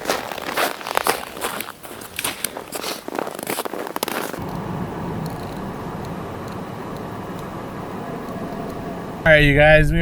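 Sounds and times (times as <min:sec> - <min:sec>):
footsteps in snow: 0:00.0 - 0:04.5.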